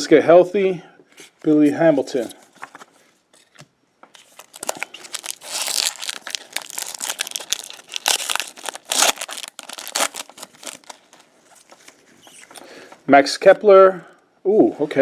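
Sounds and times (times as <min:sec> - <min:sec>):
plastic wrapper crinkling and tearing: 0:04.2 - 0:12.6.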